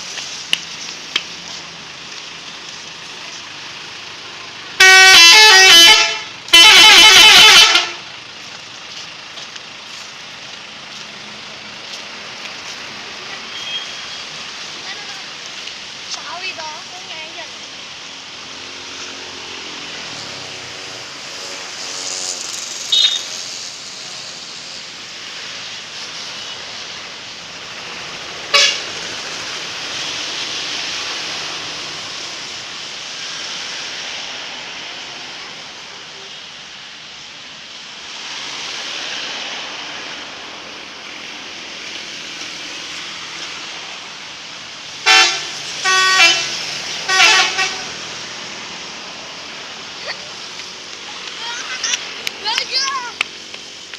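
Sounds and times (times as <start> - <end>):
road traffic passing: 0.0 - 53.9
short horn toots: 4.8 - 8.0
bus multi-tone horn blasts: 4.8 - 8.2, 22.9 - 23.4, 28.5 - 28.9, 45.0 - 48.0.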